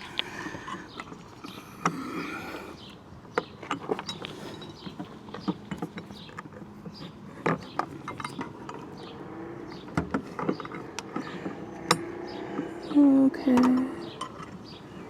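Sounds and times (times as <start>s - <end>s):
hardware clicks and knocks: 3.3s - 9.1s, 9.7s - 12.7s, 13.4s - 14.8s.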